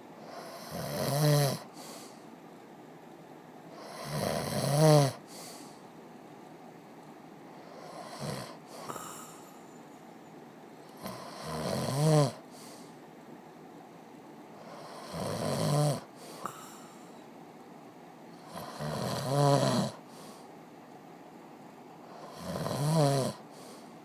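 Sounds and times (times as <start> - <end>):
person snoring: 0.2 - 2.0, 3.8 - 5.5, 7.6 - 9.4, 11.0 - 12.7, 14.6 - 17.0, 18.4 - 20.3, 22.1 - 23.8.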